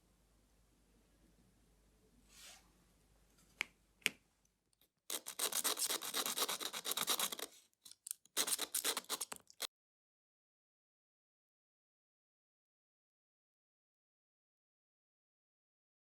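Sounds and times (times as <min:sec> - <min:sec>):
rubbing strokes polishing metal: 0:05.1 - 0:07.6, 0:08.4 - 0:09.6.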